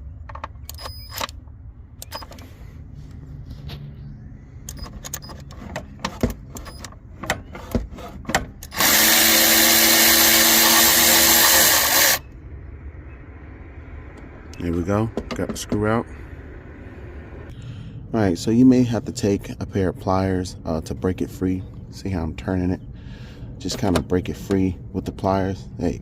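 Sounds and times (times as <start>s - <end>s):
power driver spinning: 4.6s - 12.2s.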